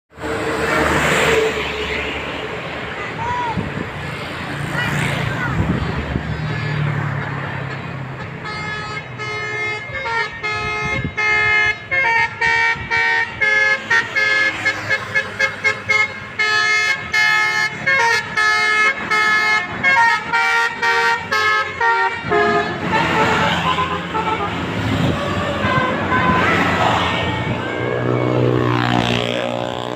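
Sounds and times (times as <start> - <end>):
rush of vehicle noise: 0.1 - 29.9
air horn playing melody: 8.3 - 29.9.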